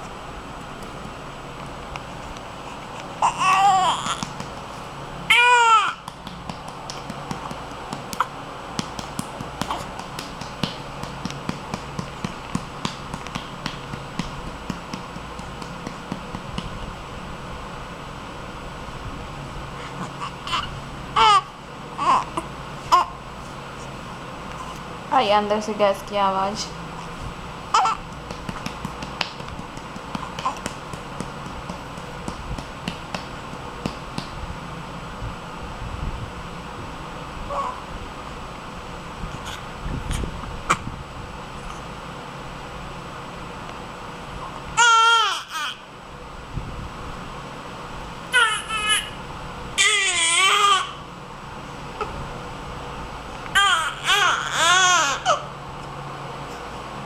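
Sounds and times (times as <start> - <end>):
baby vocal sound: 3.2 - 4.4, 9.6 - 10.0, 19.8 - 23.2, 37.5 - 37.8
hand patting baby's back: 3.4 - 16.9, 27.8 - 34.4.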